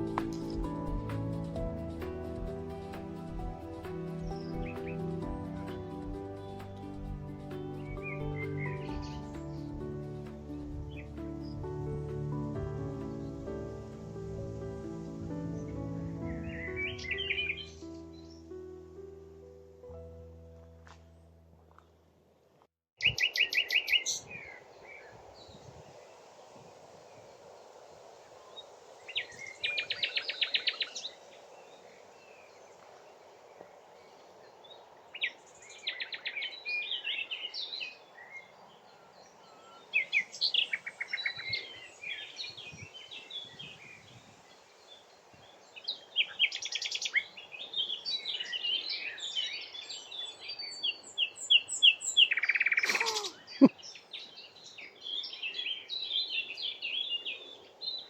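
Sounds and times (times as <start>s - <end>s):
songbird trilling and twittering: 23.0s - 26.7s, 28.5s - 32.9s, 33.5s - 58.0s.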